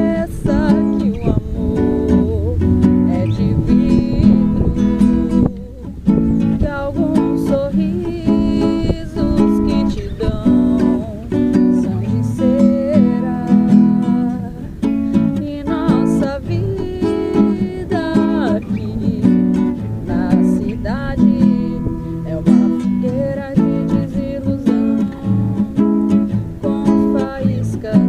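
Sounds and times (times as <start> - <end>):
acoustic guitar reggae strumming: 0.0 - 28.0
person singing: 0.0 - 28.0.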